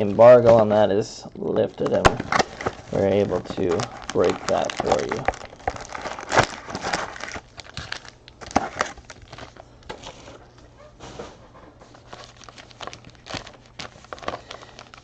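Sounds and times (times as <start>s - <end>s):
plastic wrapper crinkling and tearing: 1.6s - 10.3s, 11.9s - 15.0s.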